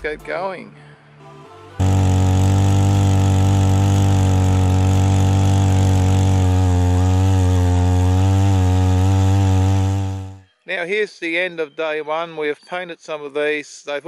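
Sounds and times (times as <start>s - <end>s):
post-hole digger engine running: 1.8s - 10.4s.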